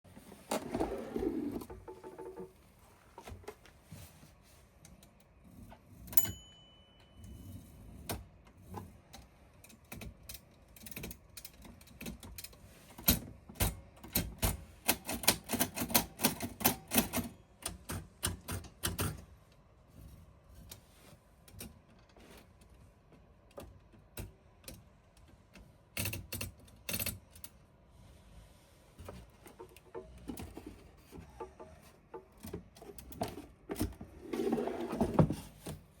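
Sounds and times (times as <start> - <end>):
dull typewriter clatter: 9.8 - 19.3
typewriter keystrokes: 13.0 - 19.2.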